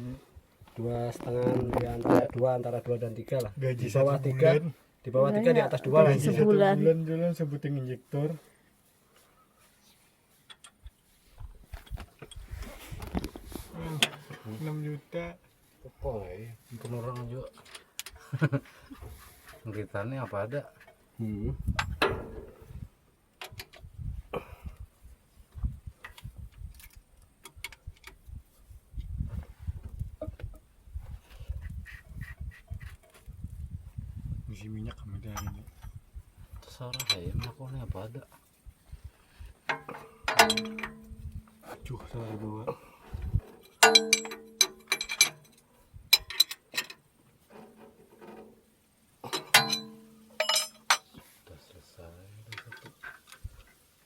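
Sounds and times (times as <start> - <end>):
faint handling noises: 7.8 - 21.2, 34.8 - 54.0
hand tools clicking and knocking: 39.7 - 41.2, 43.4 - 47.0, 49.2 - 51.2.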